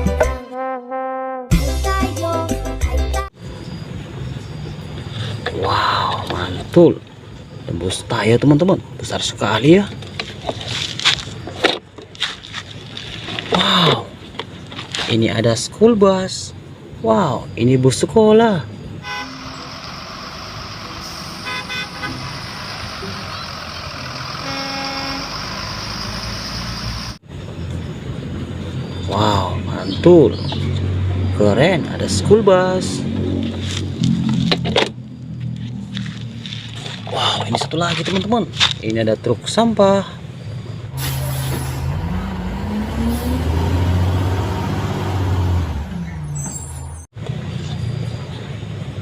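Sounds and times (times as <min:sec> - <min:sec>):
engine and traffic noise: 0:03.3 - 0:49.0
truck engine running: 0:18.8 - 0:29.0
vehicle horn tooting: 0:19.0 - 0:19.9, 0:21.1 - 0:22.5, 0:24.4 - 0:25.8.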